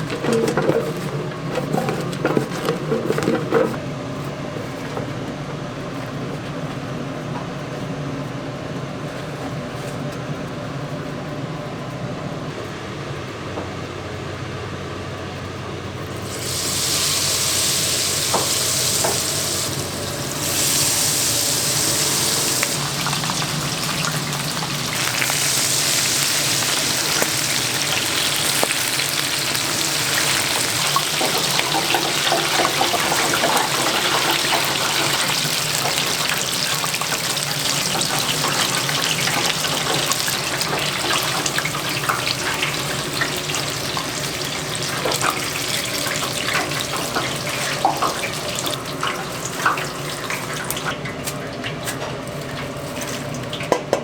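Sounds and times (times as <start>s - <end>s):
chicken sizzling in hot oil: 16.2s - 51.0s.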